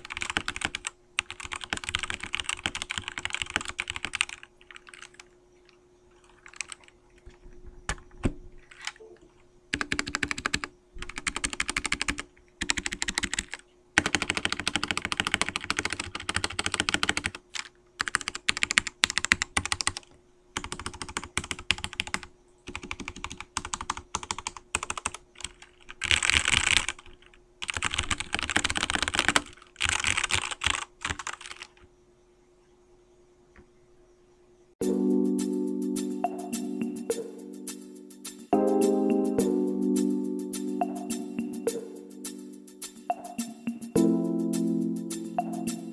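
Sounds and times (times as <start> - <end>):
mechanical keyboard typing: 0.0 - 5.3, 6.2 - 9.1, 9.7 - 31.8.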